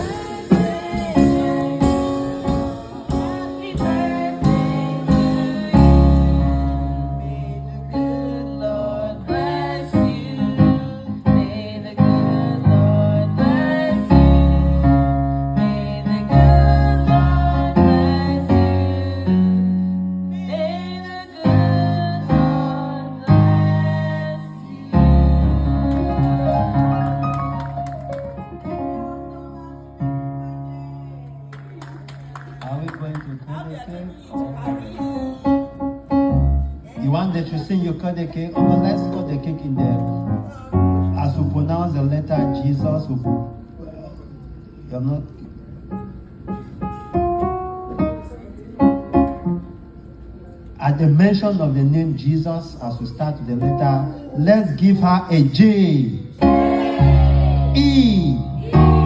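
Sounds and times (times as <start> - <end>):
electric keyboard slow chords: 0.0 - 32.4, 34.0 - 50.8, 53.6 - 59.0
deep bass note: 57.0 - 59.0.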